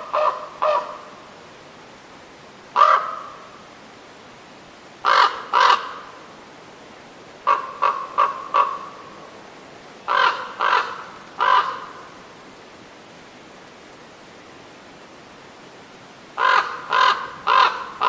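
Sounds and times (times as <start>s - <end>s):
crows cawing: 0.0s - 1.1s, 2.8s - 3.4s, 5.0s - 6.1s, 7.4s - 9.0s, 10.1s - 12.0s, 16.4s - 18.0s.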